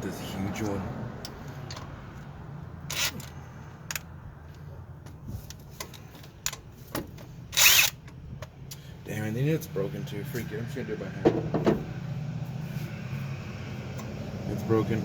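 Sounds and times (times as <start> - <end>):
power tool running on a bolt: 2.9 - 3.3, 7.6 - 8.0.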